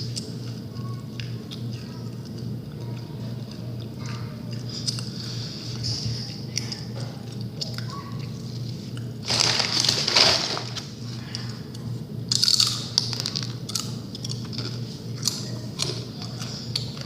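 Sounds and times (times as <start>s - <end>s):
steady low hum: 0.0s - 17.0s
crunching and crackling: 7.3s - 11.5s, 12.3s - 17.0s.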